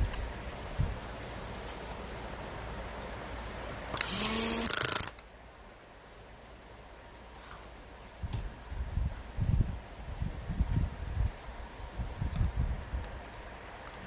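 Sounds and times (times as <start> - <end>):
steady background hiss: 0.0 - 14.0
small power tool running: 4.0 - 5.1.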